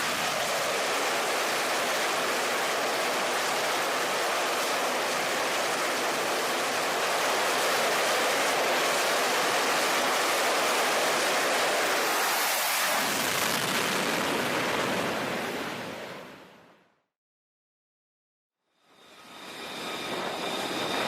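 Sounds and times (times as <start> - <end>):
loud steady rushing noise: 0.0 - 16.1, 18.8 - 21.0.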